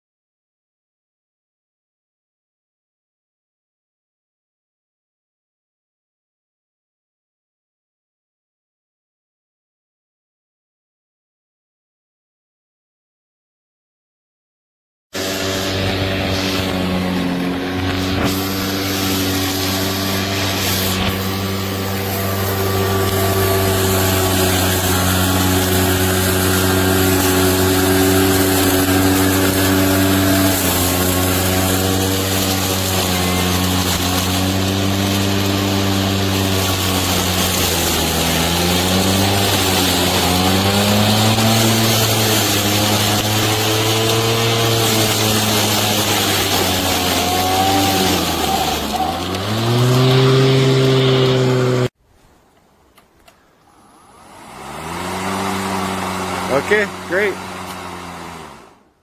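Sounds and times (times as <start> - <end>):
lawn mower running: 15.2 - 51.9, 54.1 - 59.0.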